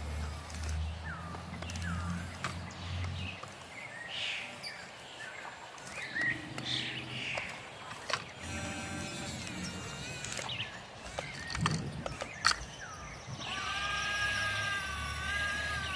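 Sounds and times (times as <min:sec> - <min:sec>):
birds chirping: 0:00.0 - 0:15.9
sharp clicks: 0:00.3 - 0:03.8, 0:05.7 - 0:14.0.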